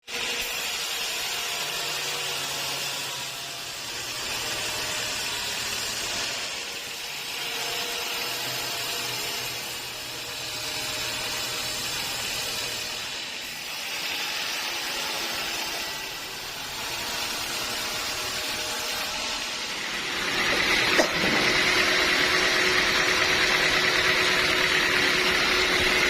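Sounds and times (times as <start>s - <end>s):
saw blade cutting wood: 0.0s - 26.0s
low motor hum: 19.8s - 26.0s.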